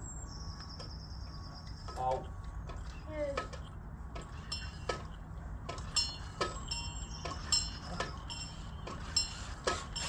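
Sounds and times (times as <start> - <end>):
metallic ticking with ring: 5.8 - 10.0.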